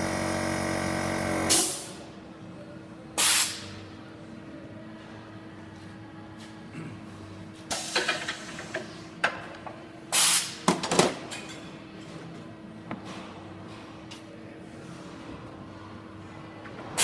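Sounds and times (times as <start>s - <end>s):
machine hum: 0.0s - 1.6s.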